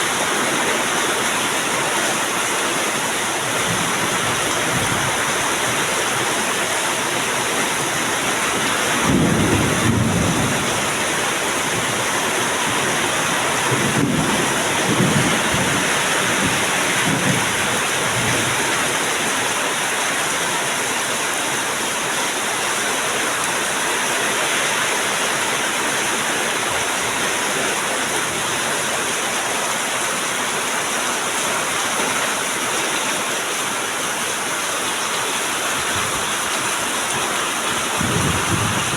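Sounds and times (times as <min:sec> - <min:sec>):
heavy rain: 0:00.0 - 0:38.9
thunder rumbling: 0:08.5 - 0:18.6, 0:37.8 - 0:38.9.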